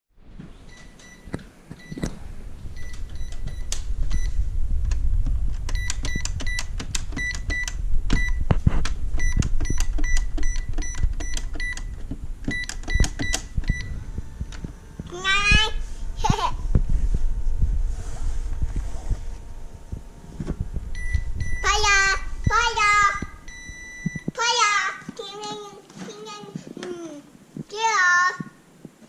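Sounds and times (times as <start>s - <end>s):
low rumble: 2.2s - 24.3s
sharp clicks and knocks: 2.8s - 15.6s.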